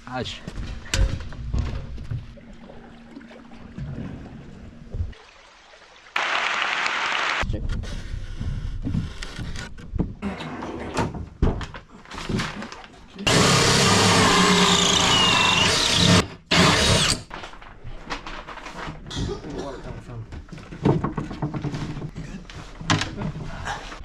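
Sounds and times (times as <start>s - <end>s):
power drill with hole saw: 13.3s - 17.3s.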